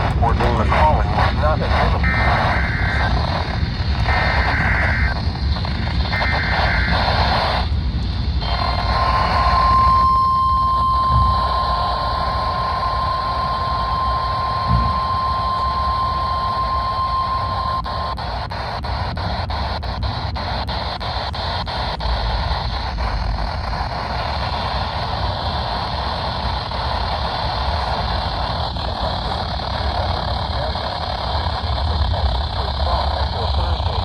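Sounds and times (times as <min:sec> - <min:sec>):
noisy radio reception rumble: 0:00.0 - 0:34.0
screeching data bursts: 0:00.2 - 0:34.0
steady single-pitched attention tone: 0:08.4 - 0:17.8.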